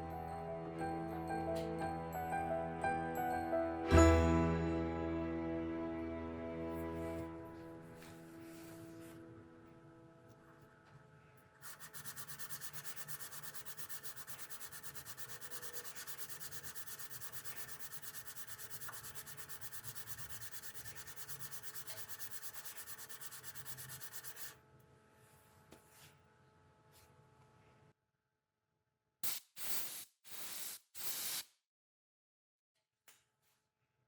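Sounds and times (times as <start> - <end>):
hand tool rubbing on wood: 11.6 - 24.5.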